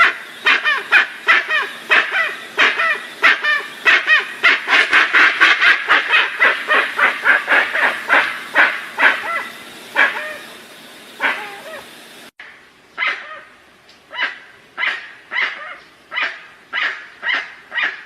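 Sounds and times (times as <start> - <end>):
bird yelping honks: 0.0 - 10.5, 11.2 - 11.9.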